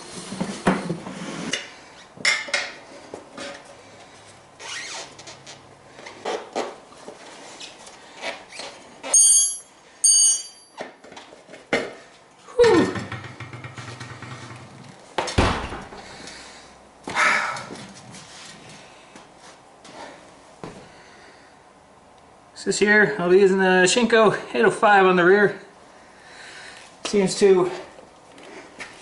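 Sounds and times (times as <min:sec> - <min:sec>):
heavy thump: 0:15.3 - 0:16.0.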